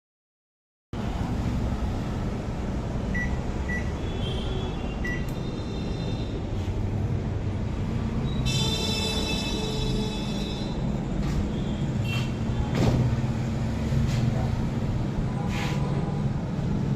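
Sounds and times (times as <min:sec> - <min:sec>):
short beeps: 0:05.0 - 0:05.3.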